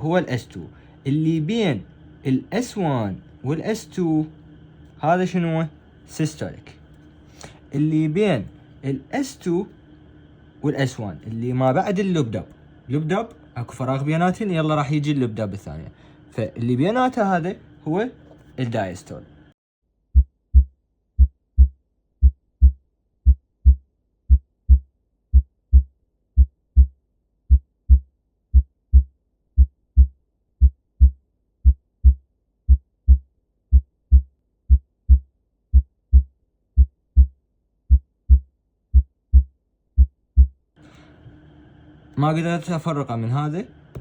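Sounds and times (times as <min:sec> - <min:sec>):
heartbeat through stethoscope: 0:20.1 - 0:40.6.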